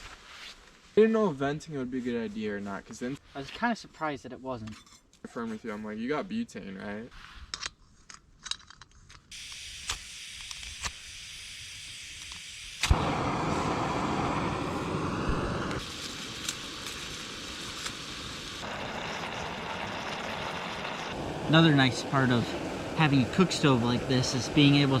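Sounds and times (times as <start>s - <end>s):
gas hissing: 9.3s - 25.0s
burner flame rushing: 9.4s - 25.0s.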